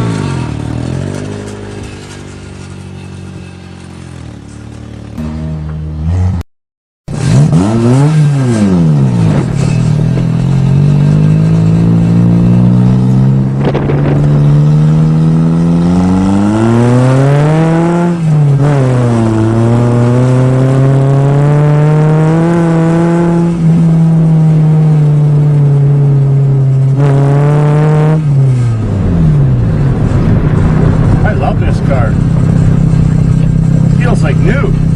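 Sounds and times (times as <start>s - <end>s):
car engine accelerating: 0.0s - 6.4s, 7.1s - 34.9s.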